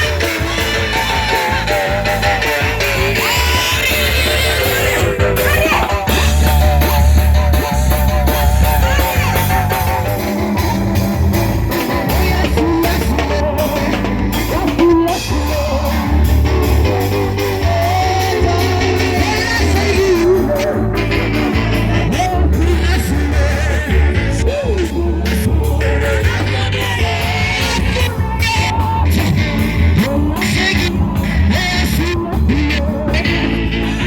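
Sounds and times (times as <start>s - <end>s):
live gospel band and singing: 0.0s - 34.0s.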